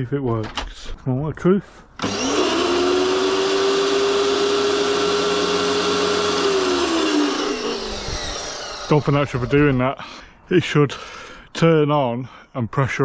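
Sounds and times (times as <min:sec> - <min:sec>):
pressure washer motor whining: 0:02.0 - 0:09.8.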